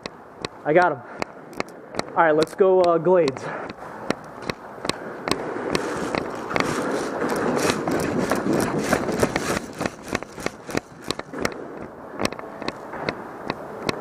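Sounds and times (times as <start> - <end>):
quick footsteps: 0.0 - 14.0
clothing and gear rustle: 5.4 - 11.4.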